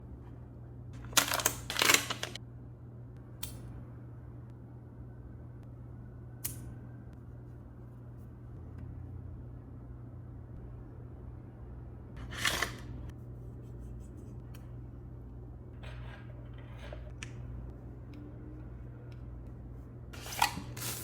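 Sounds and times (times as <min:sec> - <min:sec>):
steady low hum: 0:00.0 - 0:01.5, 0:02.2 - 0:21.0
packaging rustling scrapes: 0:20.2 - 0:21.0.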